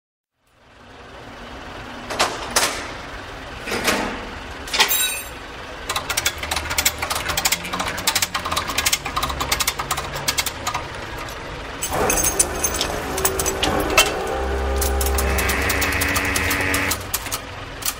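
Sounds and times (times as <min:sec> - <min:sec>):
tow truck engine running: 0:00.6 - 0:17.9
fast mechanical rattling: 0:05.8 - 0:17.9
metal clank: 0:11.8 - 0:15.4.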